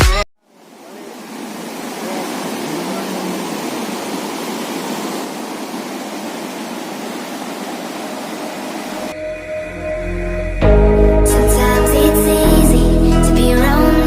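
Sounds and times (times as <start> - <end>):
waterfall roaring: 0.5 - 9.2.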